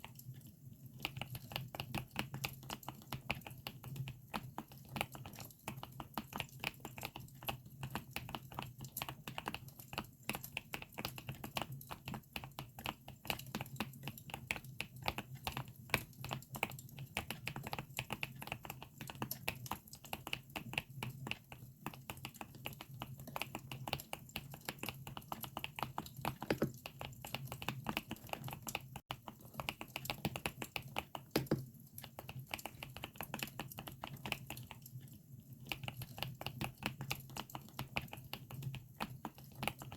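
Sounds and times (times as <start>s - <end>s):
mechanical keyboard typing: 24.8s - 34.8s.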